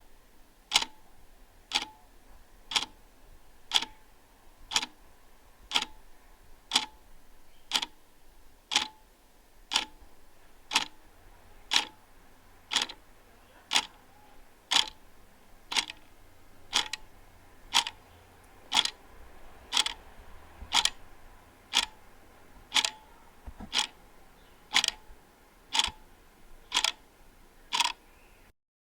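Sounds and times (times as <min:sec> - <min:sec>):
wall clock ticking: 0:00.7 - 0:01.0, 0:01.7 - 0:02.0, 0:02.7 - 0:03.0, 0:03.7 - 0:04.0, 0:04.7 - 0:05.0, 0:05.7 - 0:06.0, 0:06.7 - 0:07.0, 0:07.7 - 0:08.0, 0:08.6 - 0:09.0, 0:09.7 - 0:11.1, 0:11.7 - 0:28.0.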